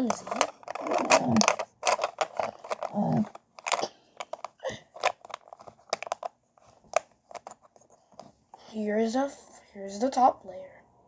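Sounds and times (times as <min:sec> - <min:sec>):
plastic bricks clicking and snapping: 0:00.0 - 0:06.3.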